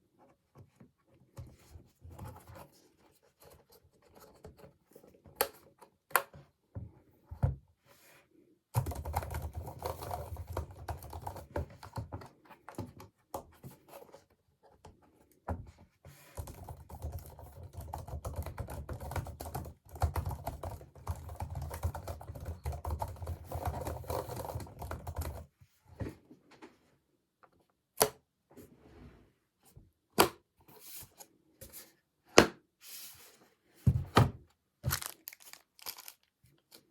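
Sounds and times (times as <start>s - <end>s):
rapid keyboard typing: 8.8s - 12.1s, 16.4s - 25.5s.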